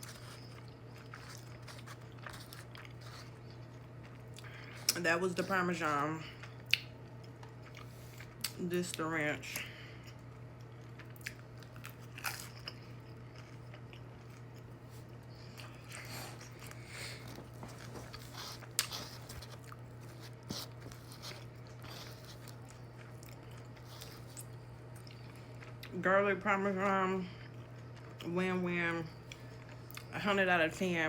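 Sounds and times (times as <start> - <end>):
person chewing food: 0.0 - 5.0, 6.3 - 8.6, 9.9 - 25.9, 29.2 - 30.1
steady low hum: 0.0 - 31.0.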